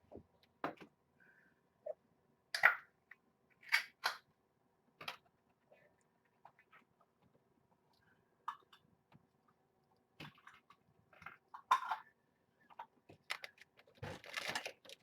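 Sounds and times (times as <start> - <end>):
cat food bag rustling: 13.2 - 15.0.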